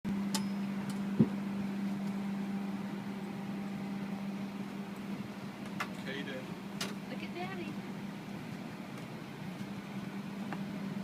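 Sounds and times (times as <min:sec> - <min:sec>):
low machine hum: 0:00.1 - 0:11.0.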